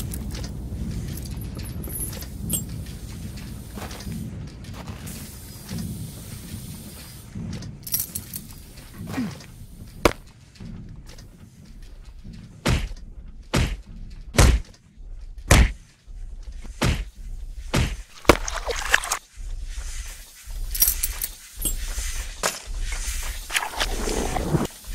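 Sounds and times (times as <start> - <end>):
heavy punch thuds: 12.6 - 14.7, 15.5 - 15.8, 16.7 - 18.4.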